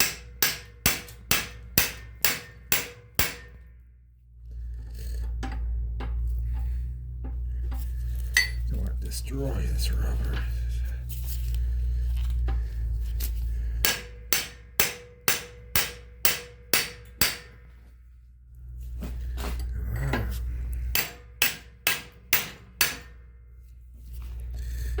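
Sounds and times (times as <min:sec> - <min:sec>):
hammer striking metal: 0:00.0 - 0:03.7, 0:13.8 - 0:17.7, 0:20.9 - 0:23.3
low rumble: 0:03.1 - 0:14.8, 0:17.4 - 0:21.4.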